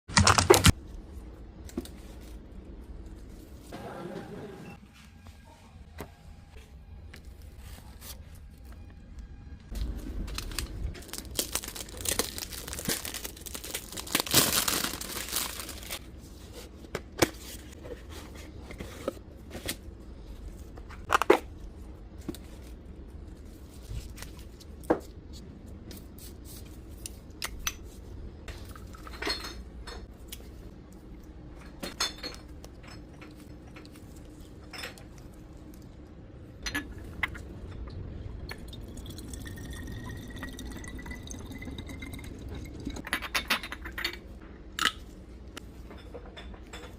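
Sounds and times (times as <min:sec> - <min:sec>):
packaging crinkling and tearing: 0:00.1 - 0:00.8, 0:09.8 - 0:16.0.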